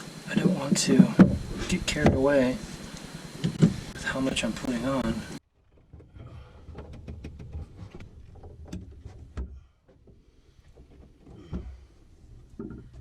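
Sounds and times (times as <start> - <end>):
louder knocks: 1.0 - 2.4
small clicks and taps on pipe: 5.9 - 11.7, 12.4 - 13.0.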